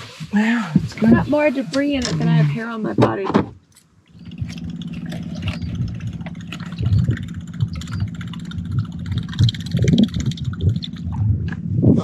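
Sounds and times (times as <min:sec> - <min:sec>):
boat motor humming: 0:04.0 - 0:11.7.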